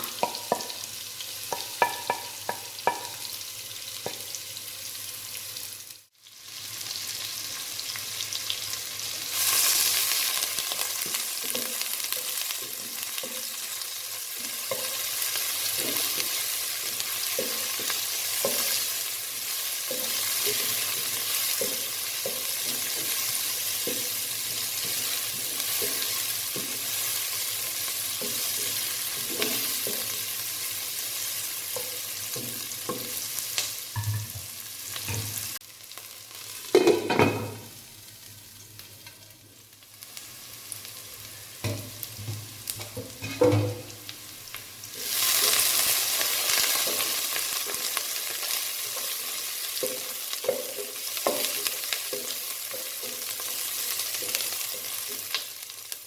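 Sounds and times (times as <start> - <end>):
food sizzling in hot oil: 0.0 - 56.0
spoon knocking against pan: 0.2 - 0.8, 1.5 - 3.2, 34.0 - 34.5.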